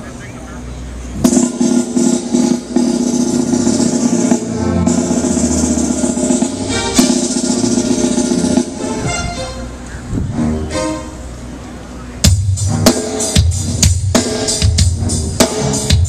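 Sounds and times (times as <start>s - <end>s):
cymbal crashes: 1.2s - 9.1s
rock band playing: 1.2s - 16.0s.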